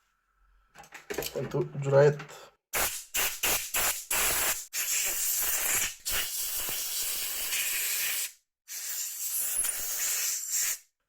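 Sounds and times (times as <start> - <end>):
compressed air hissing: 2.8 - 10.8.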